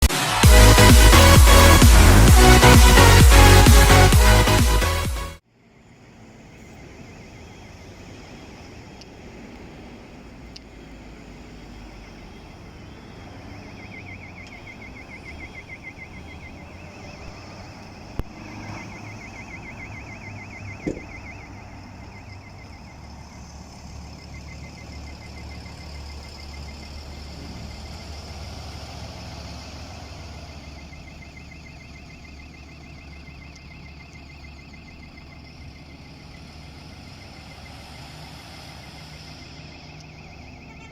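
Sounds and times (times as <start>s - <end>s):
bus engine idling: 0.0s - 40.9s
rapid high-pitched pulsing beep: 18.4s - 22.6s
sharp knocks: 20.8s - 21.1s.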